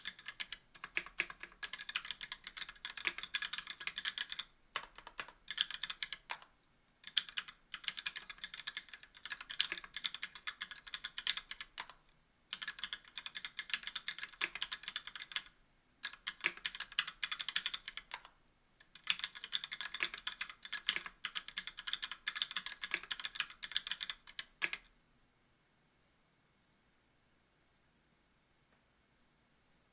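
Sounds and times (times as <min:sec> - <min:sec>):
fast typing on mechanical keyboard: 0:00.0 - 0:18.3, 0:18.9 - 0:24.8.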